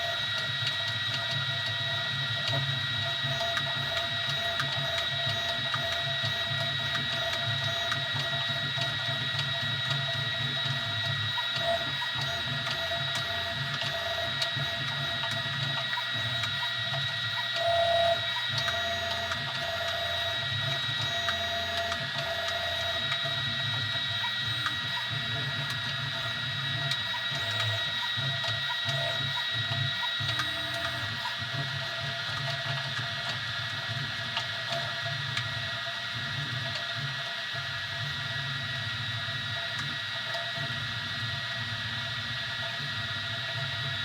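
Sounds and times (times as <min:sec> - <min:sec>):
three d printer whining: 0:00.0 - 0:32.8
printer motor tone: 0:00.0 - 0:44.0.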